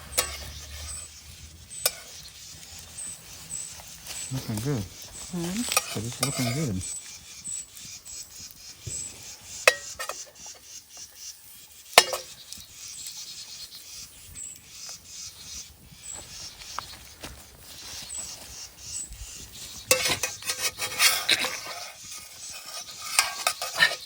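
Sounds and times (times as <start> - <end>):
utensil scraping a frying pan: 0.0 - 7.0, 9.0 - 10.7, 19.7 - 24.0.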